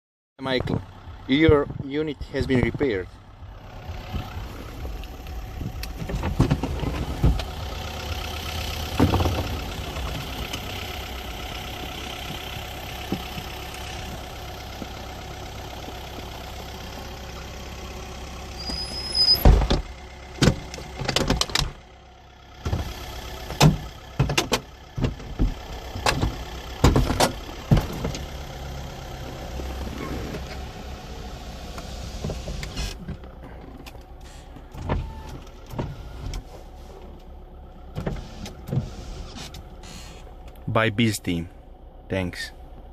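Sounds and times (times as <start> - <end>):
roof mechanism clunks and knocks: 4.8 - 7.7, 8.8 - 10.7, 23.5 - 28.3.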